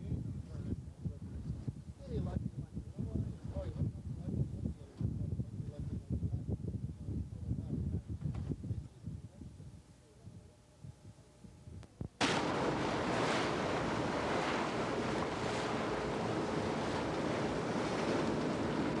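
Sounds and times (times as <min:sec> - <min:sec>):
faint low rumbling: 0:00.0 - 0:19.0
wind buffeting microphone: 0:00.0 - 0:19.0
boat hull noise: 0:12.2 - 0:19.0.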